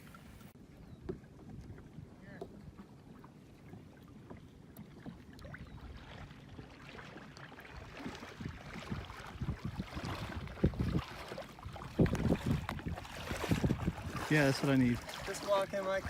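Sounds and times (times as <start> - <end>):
water sloshing around a kayak: 0.0 - 16.0
heavy low splashes: 5.8 - 16.0.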